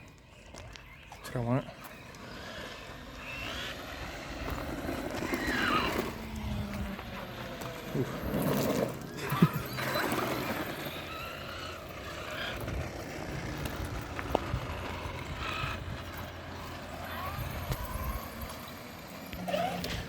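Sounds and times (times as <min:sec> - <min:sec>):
electric toy truck motors: 0:00.0 - 0:20.0.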